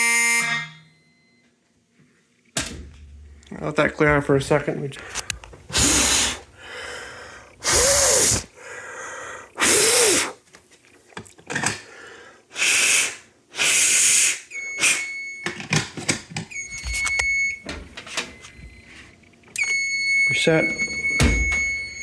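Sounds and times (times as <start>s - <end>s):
high electronic alarm tone: 0.0s - 1.4s, 14.5s - 15.5s, 16.6s - 17.7s, 18.3s - 22.0s
air bursts blowing: 5.0s - 8.6s, 9.4s - 10.4s, 12.5s - 15.2s.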